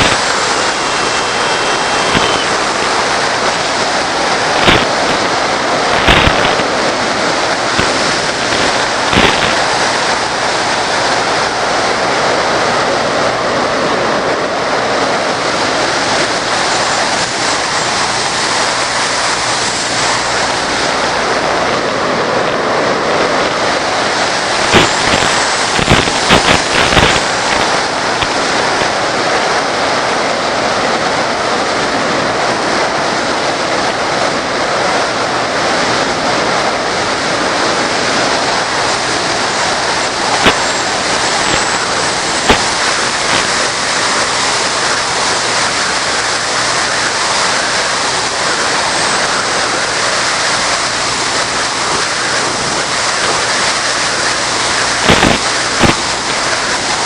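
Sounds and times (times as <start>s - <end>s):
crackling pops: 0.0s - 11.0s, 16.2s - 29.0s, 38.3s - 57.0s
loud rushing hiss: 0.0s - 57.0s.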